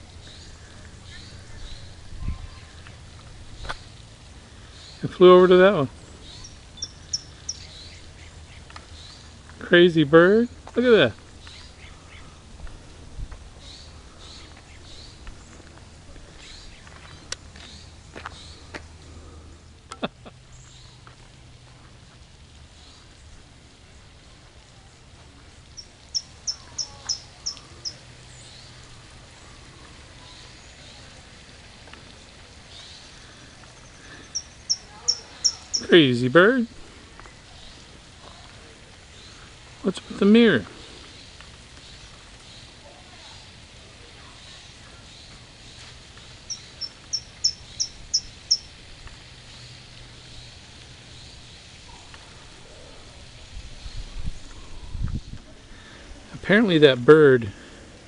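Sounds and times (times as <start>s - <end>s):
outdoor background noise: 0.0s - 58.0s
small bird sharp calls: 6.0s - 9.4s, 25.7s - 31.1s, 32.7s - 36.1s, 44.3s - 48.8s.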